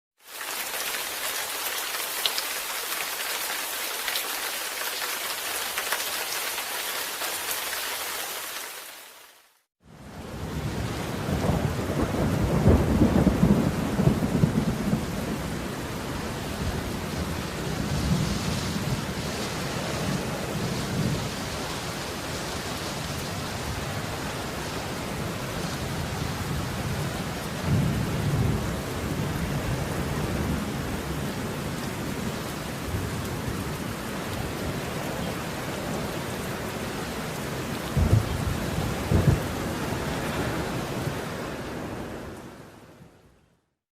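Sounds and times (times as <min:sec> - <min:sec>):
heavy rain falling: 0:00.2 - 0:42.8
thunder rumbling: 0:10.1 - 0:15.7, 0:37.9 - 0:42.2.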